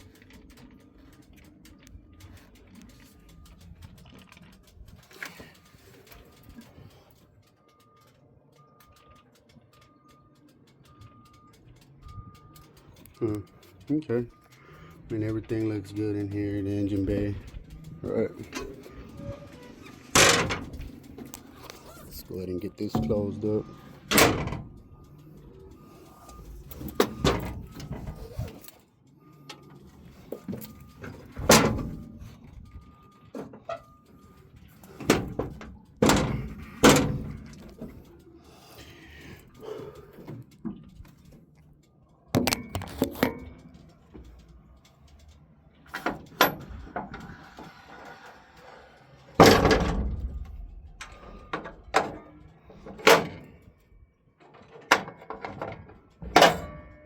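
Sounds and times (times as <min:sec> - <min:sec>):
light metal clatter: 0:00.0 - 0:57.0
metal doors clanking shut: 0:16.8 - 0:24.9, 0:25.8 - 0:28.5, 0:30.6 - 0:32.6, 0:34.8 - 0:38.0, 0:45.9 - 0:53.6, 0:54.6 - 0:57.0.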